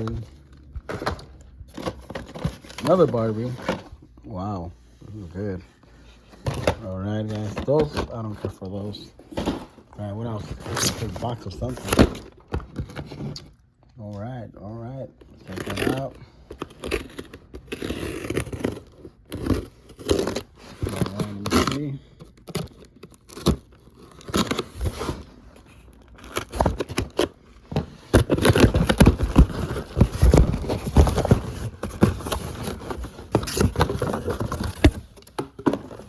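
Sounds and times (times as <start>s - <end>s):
cardboard box tearing: 15.4s - 36.0s.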